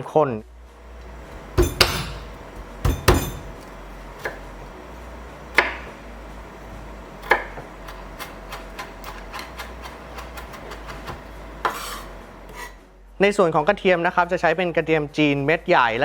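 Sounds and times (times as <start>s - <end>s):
sharp knocks on hard surface: 1.2s - 3.6s.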